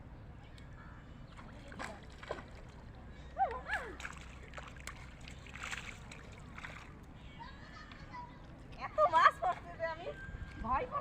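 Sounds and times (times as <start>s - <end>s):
water splashing and sloshing: 1.3s - 7.2s.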